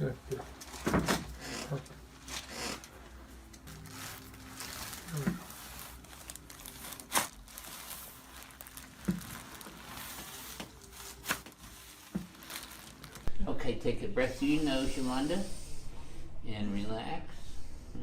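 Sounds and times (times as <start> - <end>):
crinkling and rustling: 0.3 - 13.3.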